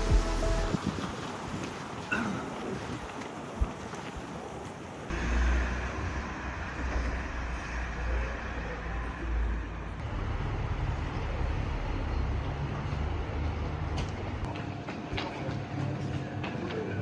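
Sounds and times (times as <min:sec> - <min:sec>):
motor vehicle rumbling: 0:00.0 - 0:00.9, 0:05.1 - 0:14.5.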